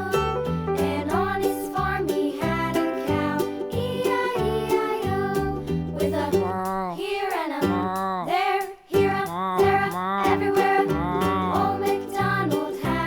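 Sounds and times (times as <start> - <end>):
upbeat music with bass line: 0.0 - 4.1.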